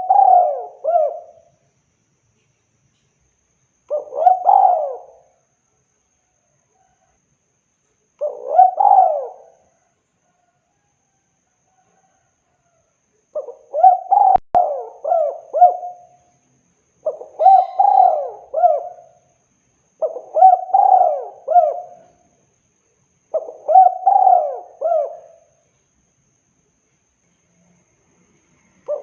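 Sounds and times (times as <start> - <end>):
dove cooing: 0.0 - 1.5, 3.9 - 5.3, 8.2 - 9.6, 13.4 - 16.2, 17.0 - 19.2, 20.0 - 22.3, 23.3 - 25.6, 28.8 - 29.0.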